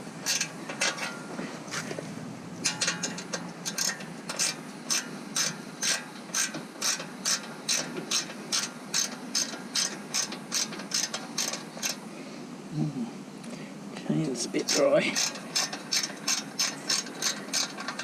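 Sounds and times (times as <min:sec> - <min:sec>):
socket ratchet clicking: 0:14.7 - 0:18.0.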